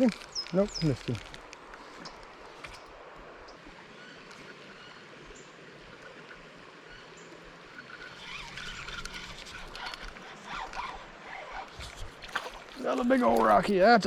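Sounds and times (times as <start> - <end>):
flowing creek water: 0.0 - 14.0
water splashing and clattering: 11.5 - 14.0.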